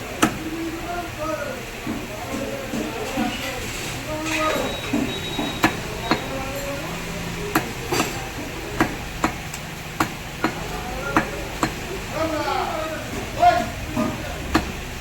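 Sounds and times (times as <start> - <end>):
background murmur: 0.0 - 15.0
blade chopping fish on block: 8.8 - 11.8.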